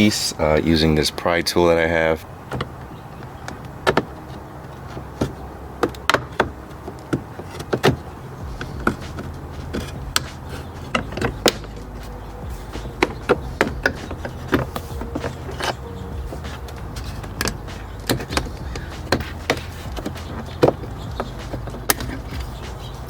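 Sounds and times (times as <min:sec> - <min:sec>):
steady low hum: 0:04.1 - 0:23.0.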